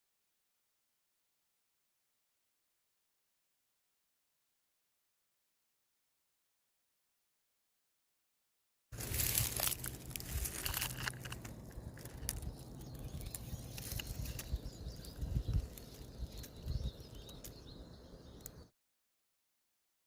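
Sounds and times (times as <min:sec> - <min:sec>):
rustling and crackling: 0:09.0 - 0:17.6.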